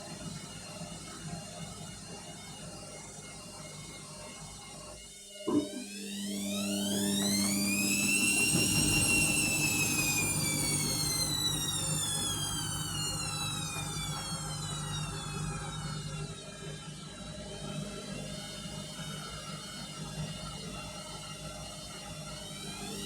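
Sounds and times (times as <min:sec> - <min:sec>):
washing machine drum whine: 0:05.4 - 0:18.1.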